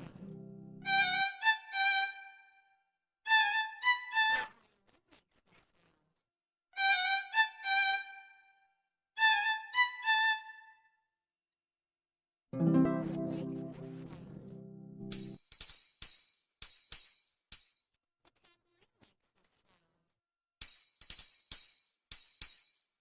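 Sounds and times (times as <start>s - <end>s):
violin high notes: 12.6s - 14.8s
fuller sound: 12.6s - 15.7s.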